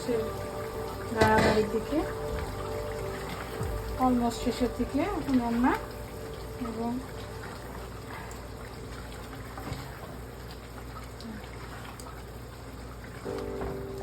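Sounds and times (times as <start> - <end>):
steady humming tone: 0.0 - 10.2
curry simmering and bubbling: 0.0 - 14.0.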